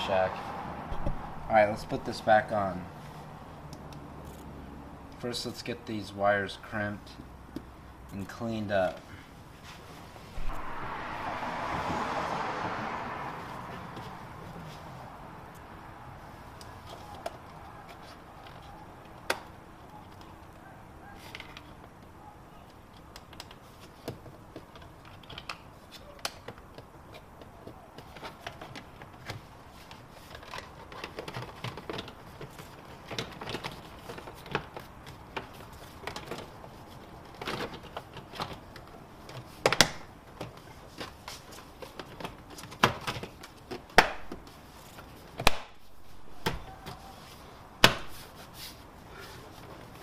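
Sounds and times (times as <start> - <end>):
sharp snap: 45.4 - 45.8.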